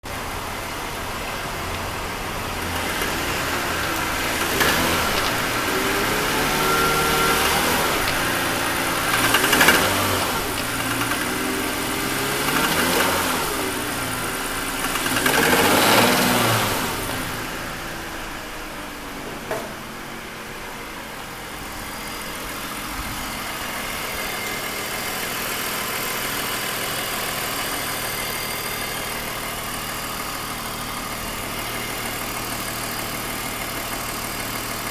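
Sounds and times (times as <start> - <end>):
car engine revving: 0.2 - 18.7.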